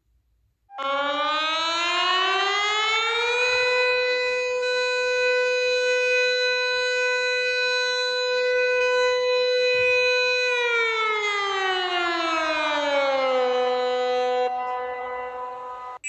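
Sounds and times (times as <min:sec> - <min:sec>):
civil defence warning siren: 0:00.7 - 0:16.0.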